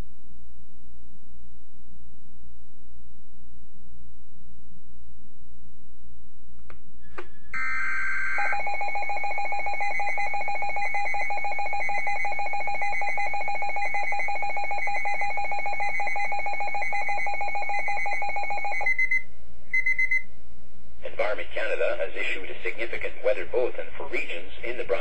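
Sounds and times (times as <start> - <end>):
chirping high tones: 7.1 - 20.2
warbling data tones: 7.5 - 20.2.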